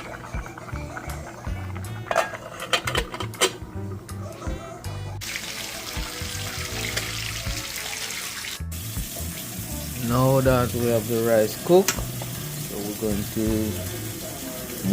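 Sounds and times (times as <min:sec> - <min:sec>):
background music: 0:00.0 - 0:14.9
water running from a tap: 0:05.2 - 0:14.9.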